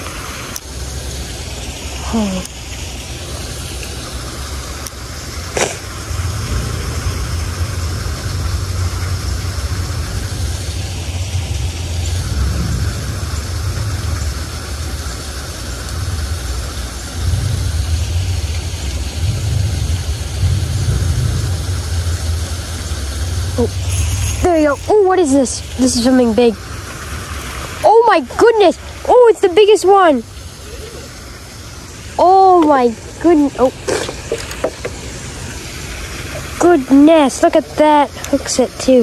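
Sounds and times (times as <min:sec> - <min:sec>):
water rushing at a spillway: 0:00.0 - 0:39.0
low rumble: 0:15.9 - 0:27.8.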